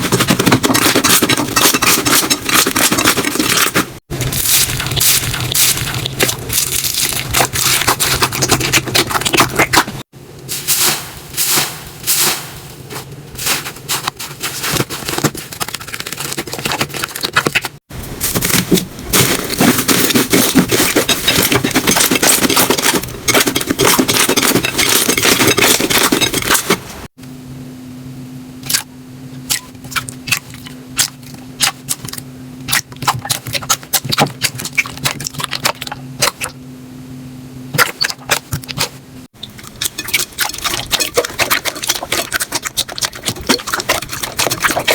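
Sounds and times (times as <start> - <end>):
steady low hum: 0.0 - 44.9
slime crackling and popping: 3.6 - 9.8.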